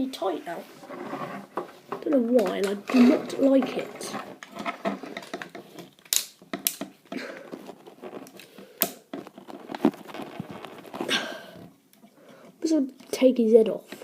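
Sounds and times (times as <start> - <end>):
plastic toy parts rustling: 0.9 - 11.7
sharp plastic clicks: 5.2 - 6.9.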